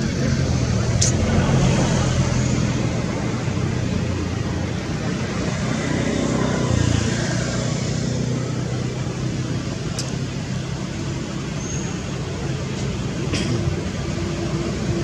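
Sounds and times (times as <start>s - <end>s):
low engine hum: 0.0s - 15.0s
road traffic noise: 0.0s - 15.0s
sharp click: 10.0s - 10.2s.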